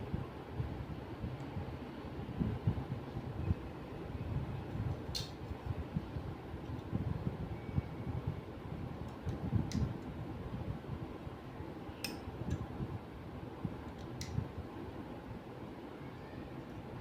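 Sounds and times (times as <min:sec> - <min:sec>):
light clicks of small parts: 0:04.9 - 0:05.5, 0:12.0 - 0:12.7.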